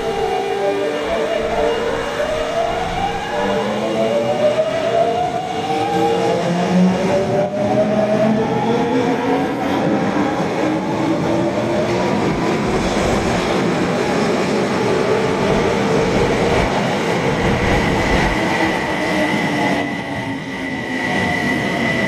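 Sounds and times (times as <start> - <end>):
steady high tone: 0.0 - 5.4
subway train motor whine: 0.0 - 22.0
train running noise: 0.0 - 22.0.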